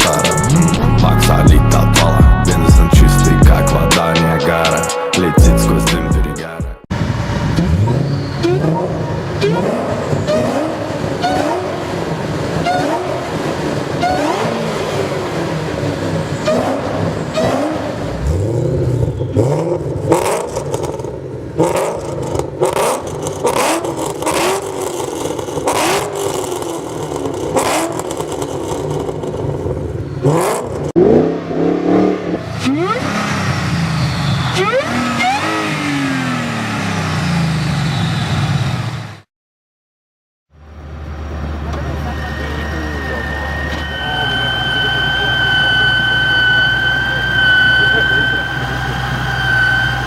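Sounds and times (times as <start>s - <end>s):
car engines revving: 0.0s - 4.8s, 6.9s - 39.3s, 40.6s - 50.0s
rising supercharger whine: 40.6s - 50.0s.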